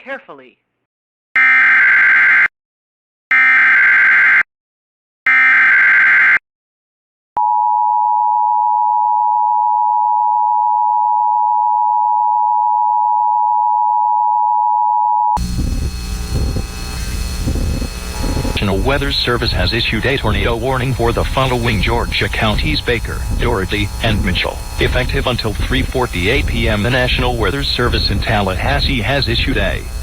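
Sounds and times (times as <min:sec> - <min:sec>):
digital data bursts: 0:15.4 - 0:30.0
hiss and hum: 0:15.4 - 0:30.0.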